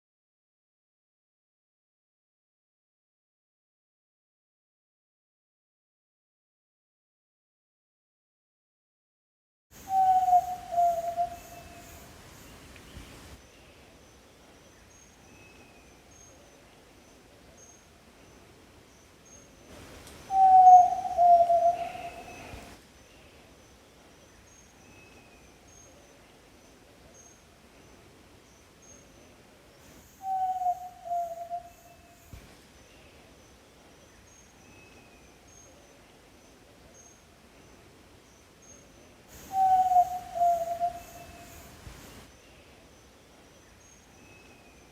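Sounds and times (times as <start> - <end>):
faint high chirping: 9.8 - 19.6, 20.3 - 44.9
bird long low whistle: 9.9 - 12.1, 20.3 - 22.7, 30.2 - 32.3, 39.4 - 42.2.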